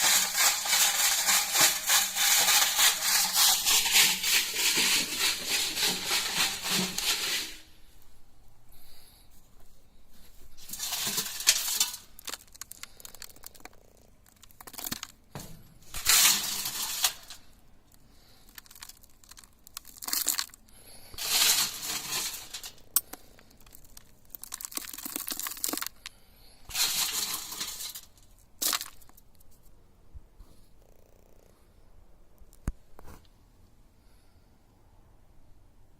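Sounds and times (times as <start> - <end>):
sand hissing and rustling: 21.1 - 22.9, 26.7 - 28.1.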